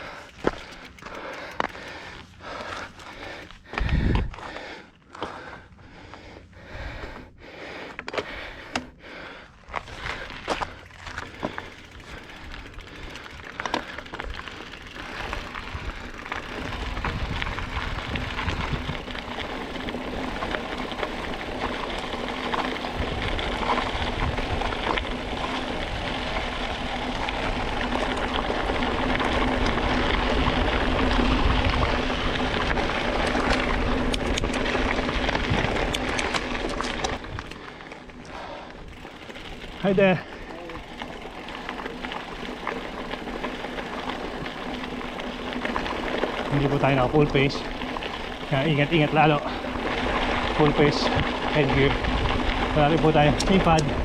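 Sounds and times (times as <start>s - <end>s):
bike rattling and knocking: 0.0s - 4.6s, 9.7s - 54.0s
wind and tyres rushing: 0.0s - 54.0s.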